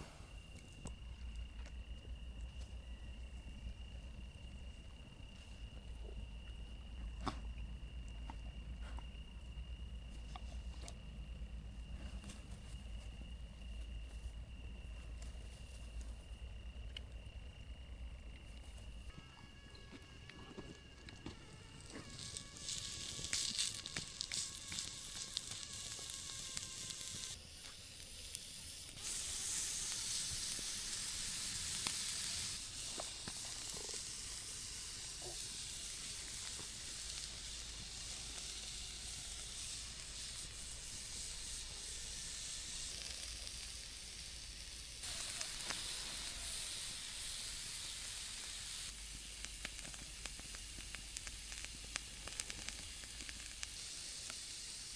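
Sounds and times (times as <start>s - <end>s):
small crackles: 11.8s - 54.9s
steak sizzling over campfire: 12.8s - 54.9s.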